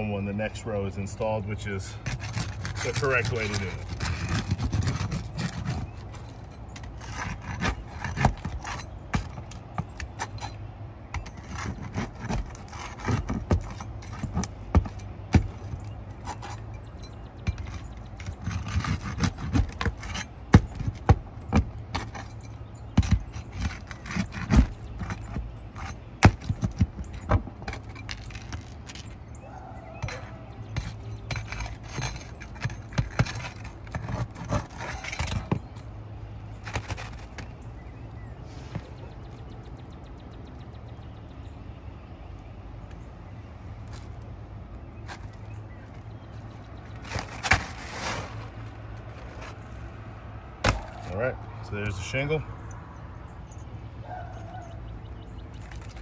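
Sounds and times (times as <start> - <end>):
tools scraping and prying shingles: 0.0 - 38.2, 43.8 - 52.4, 55.3 - 56.0.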